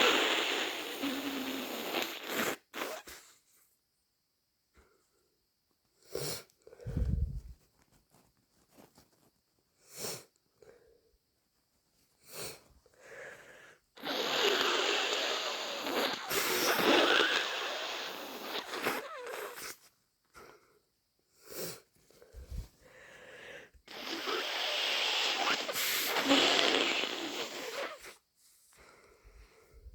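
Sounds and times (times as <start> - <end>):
woman blowing her nose: 0.0 - 3.3, 14.0 - 19.9, 23.8 - 28.2.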